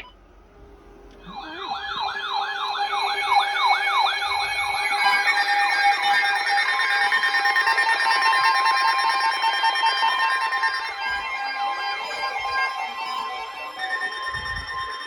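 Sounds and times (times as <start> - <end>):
siren-like alarm sweeping: 1.1 - 15.0
beeping alarm tones: 1.2 - 5.7.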